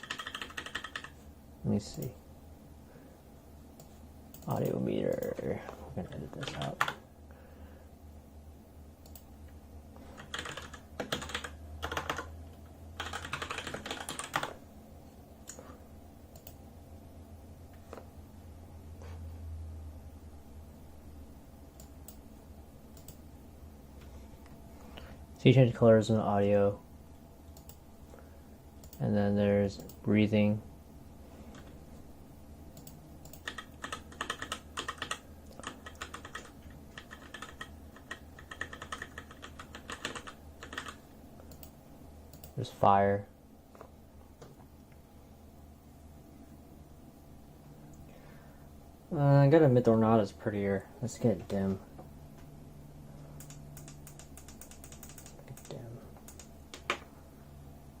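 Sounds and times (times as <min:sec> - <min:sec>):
mechanical keyboard typing: 0:00.0 - 0:01.2, 0:06.3 - 0:07.0, 0:10.1 - 0:12.3, 0:13.0 - 0:14.6, 0:32.8 - 0:41.7, 0:53.4 - 0:57.0.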